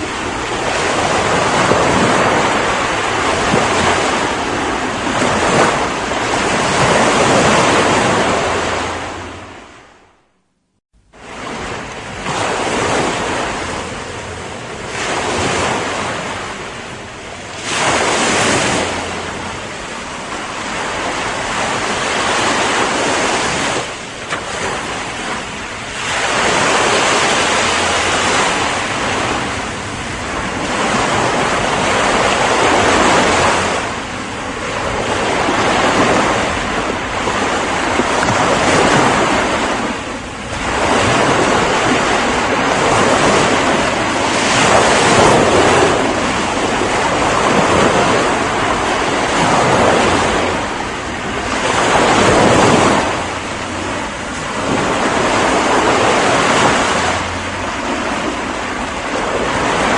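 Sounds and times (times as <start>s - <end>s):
ocean waves breaking: 0.0s - 10.3s, 11.0s - 59.9s.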